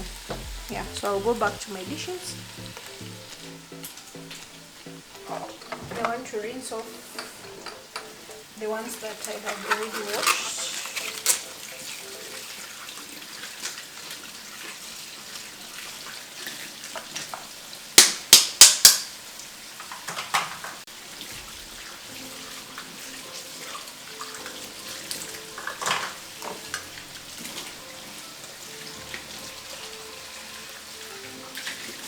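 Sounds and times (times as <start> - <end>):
tap water running: 0.0 - 32.0
dishes clinking together: 7.1 - 8.2.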